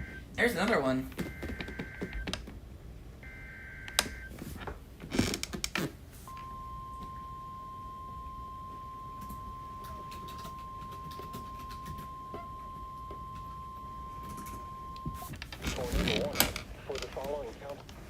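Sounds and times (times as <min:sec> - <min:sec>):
steady single-pitch warning tone: 0:00.0 - 0:00.3, 0:06.3 - 0:15.3
clicks: 0:08.7 - 0:15.6.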